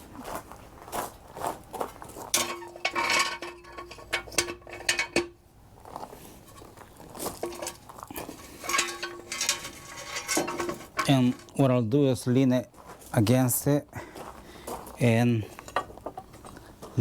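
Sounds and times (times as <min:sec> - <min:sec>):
metal jack clanking and rattling: 0:02.3 - 0:05.4, 0:07.3 - 0:11.6.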